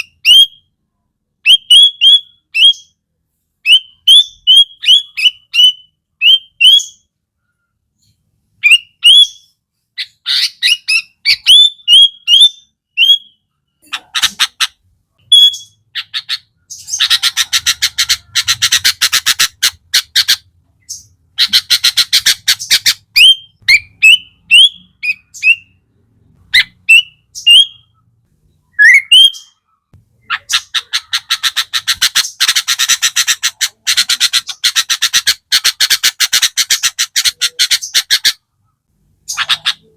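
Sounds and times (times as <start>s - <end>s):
bird chattering rattles: 15.4s - 24.2s, 30.2s - 38.4s
bird whistled notes: 28.7s - 29.5s.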